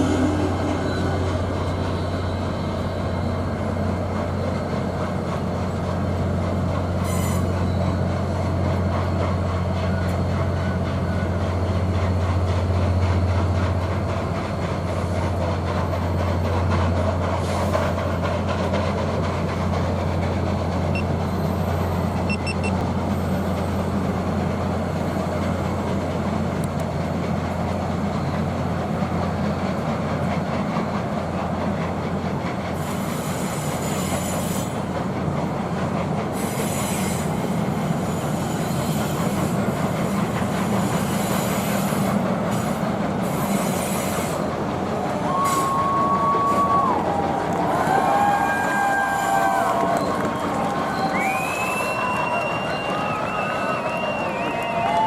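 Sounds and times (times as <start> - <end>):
train wheels rumbling on rails: 0.0 - 55.0
train whistle: 7.0 - 7.7, 45.3 - 47.0, 47.9 - 55.0
steam hissing: 32.8 - 35.0, 36.2 - 44.6.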